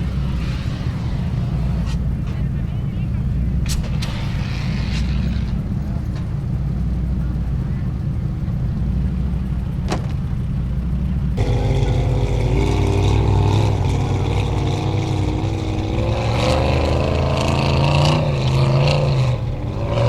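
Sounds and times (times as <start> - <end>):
engine revving hard: 0.0 - 2.1, 3.6 - 6.0, 11.4 - 20.0.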